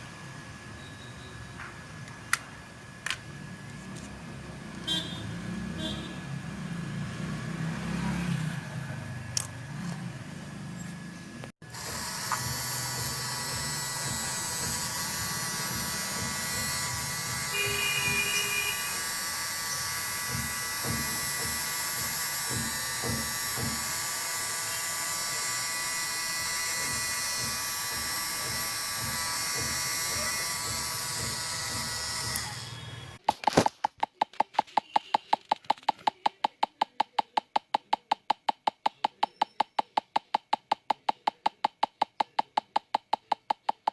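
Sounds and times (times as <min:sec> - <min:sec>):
small vacuum motor whining: 0:10.7 - 0:33.2.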